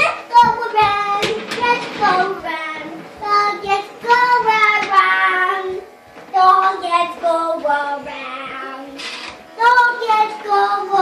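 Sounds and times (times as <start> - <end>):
child singing: 0.0 - 9.0, 9.6 - 11.0.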